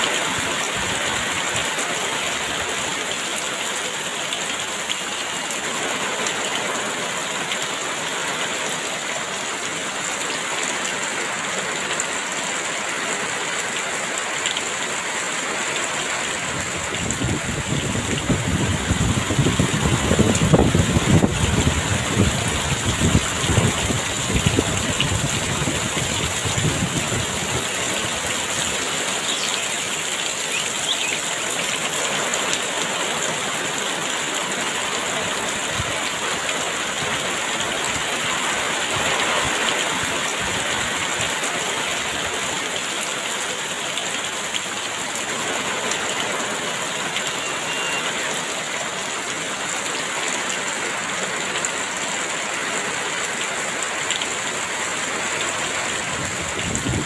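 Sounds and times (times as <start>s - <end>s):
heavy rain pouring: 0.0s - 57.0s
wind gusts: 16.0s - 31.6s, 54.0s - 57.0s.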